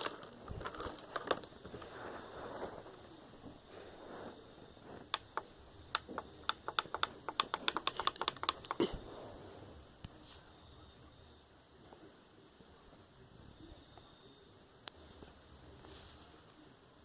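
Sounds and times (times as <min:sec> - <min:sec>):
computer keyboard keys clicking: 0:05.1 - 0:08.9.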